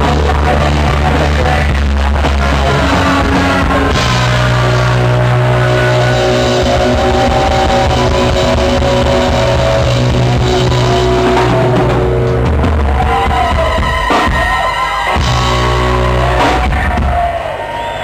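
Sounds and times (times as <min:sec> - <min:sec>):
bending lead guitar line: 0:00.0 - 0:17.3
bass: 0:00.0 - 0:18.0
distorted electric guitars: 0:00.0 - 0:18.0
drums: 0:00.0 - 0:18.0.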